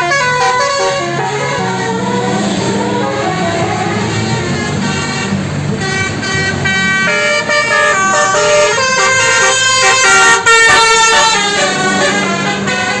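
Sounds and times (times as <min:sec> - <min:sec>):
musical air horn tune: 0:00.0 - 0:13.0
low engine hum: 0:00.1 - 0:09.9.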